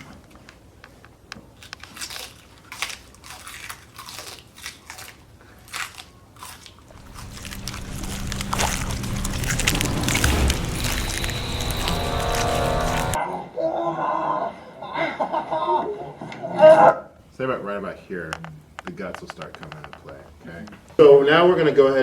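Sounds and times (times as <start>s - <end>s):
vegetable cracking and crunching: 1.5s - 13.2s
low steady hum: 6.9s - 13.2s
wash of noise: 7.0s - 13.2s.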